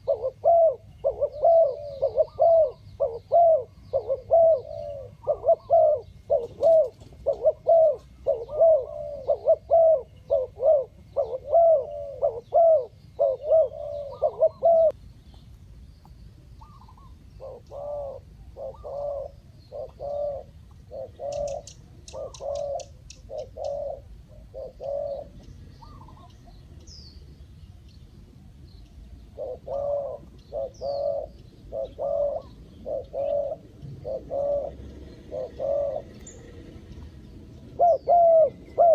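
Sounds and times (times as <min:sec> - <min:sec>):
dove cooing: 0:00.0 - 0:15.0, 0:16.6 - 0:26.6, 0:29.2 - 0:38.9
bird chirping high: 0:16.6 - 0:28.0.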